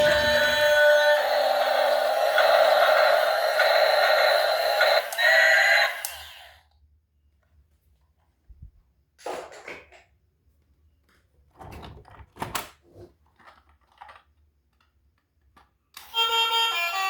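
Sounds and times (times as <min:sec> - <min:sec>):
toys and packaging rustling: 0:00.0 - 0:01.7, 0:11.0 - 0:16.3
music: 0:00.0 - 0:05.3, 0:16.0 - 0:17.0.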